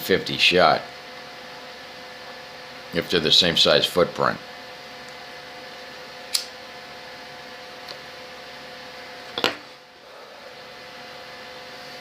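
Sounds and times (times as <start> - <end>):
electrical hum: 0.0 - 12.0
sharp click: 6.3 - 6.5.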